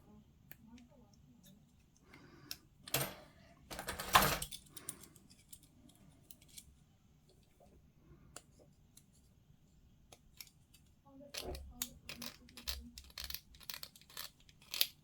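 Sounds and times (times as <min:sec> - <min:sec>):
small plastic pieces clicking: 0:11.3 - 0:15.0.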